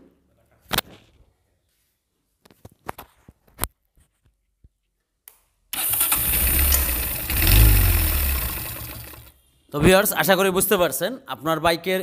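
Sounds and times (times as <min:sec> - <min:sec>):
motorcycle engine starting and running: 0:05.8 - 0:09.4.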